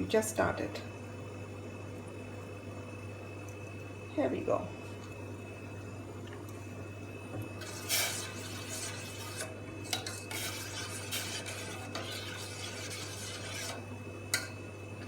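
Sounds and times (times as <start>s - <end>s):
water boiling: 4.8s - 14.5s
spoon stirring in a pan: 7.5s - 14.6s
spoon scraping a pan: 7.6s - 14.6s.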